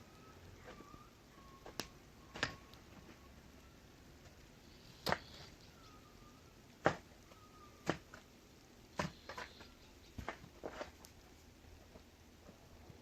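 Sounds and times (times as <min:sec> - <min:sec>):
shovel striking and scraping stone: 0:09.0 - 0:11.0.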